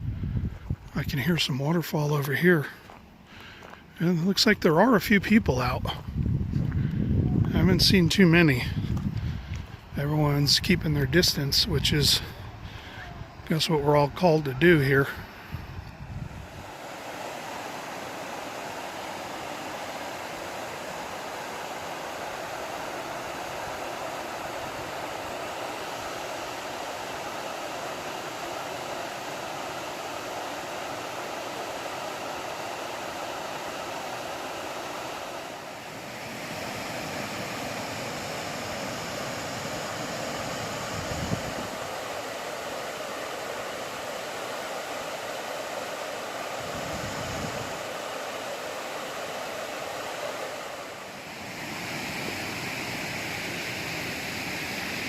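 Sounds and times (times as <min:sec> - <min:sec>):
waterfall rushing: 0:16.4 - 0:55.0.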